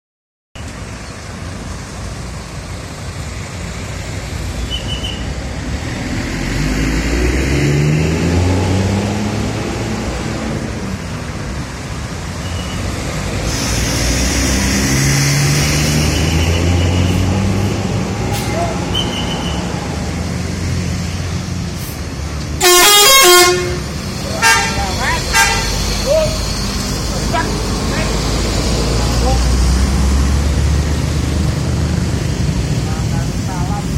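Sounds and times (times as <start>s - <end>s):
road traffic: 0.6s - 33.9s
large vehicle engine passing: 5.3s - 12.2s, 12.8s - 22.6s, 23.5s - 33.9s.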